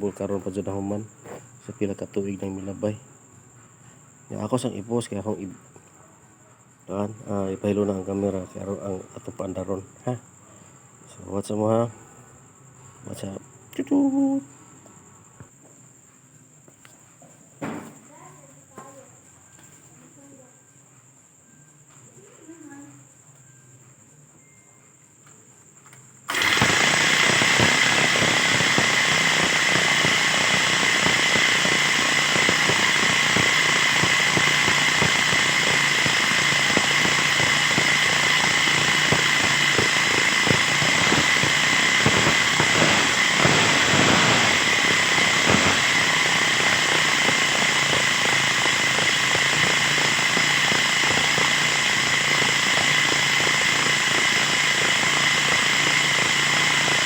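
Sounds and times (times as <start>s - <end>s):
lawn mower engine running: 26.3s - 57.0s.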